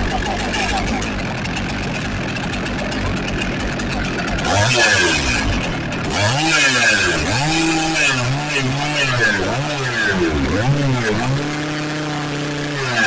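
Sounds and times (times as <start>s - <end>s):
chainsaw engine idling and revving: 0.0s - 13.0s.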